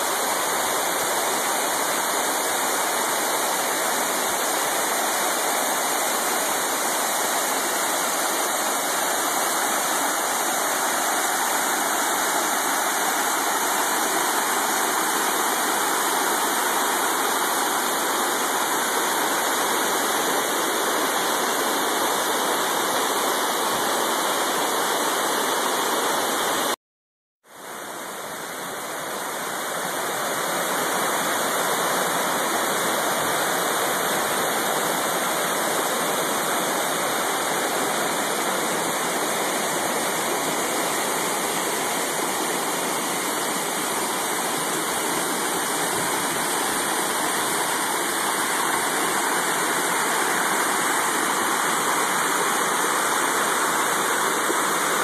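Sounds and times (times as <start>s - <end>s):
waterfall roaring: 0.0s - 26.7s, 27.7s - 55.0s.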